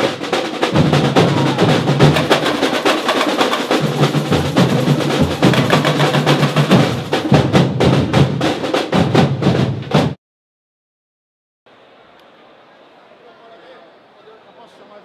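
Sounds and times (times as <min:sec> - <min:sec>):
deep bass drum beats: 0:00.0 - 0:10.2
percussion ensemble drumming: 0:00.0 - 0:10.2.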